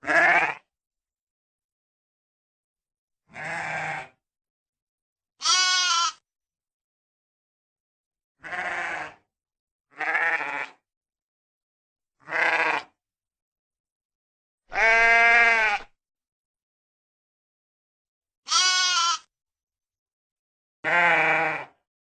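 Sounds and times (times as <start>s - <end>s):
sheep bleating: 0.0s - 0.7s, 3.3s - 4.2s, 5.4s - 6.2s, 8.4s - 9.2s, 9.9s - 10.8s, 12.2s - 13.0s, 14.7s - 15.9s, 18.5s - 19.3s, 20.8s - 21.8s.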